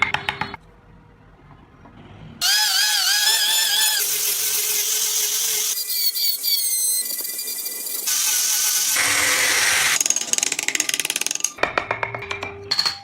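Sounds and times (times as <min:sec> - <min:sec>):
rotary carving tool whining: 0:02.4 - 0:10.0.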